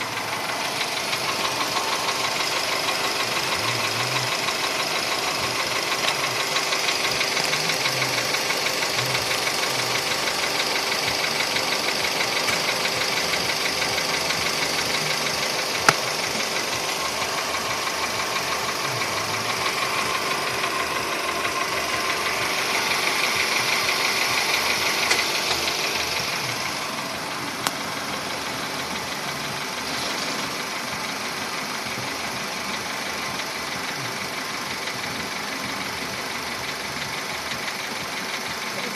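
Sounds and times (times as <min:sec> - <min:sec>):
car engine running: 0:00.0 - 0:38.9
fast regular engine knock: 0:00.0 - 0:38.9.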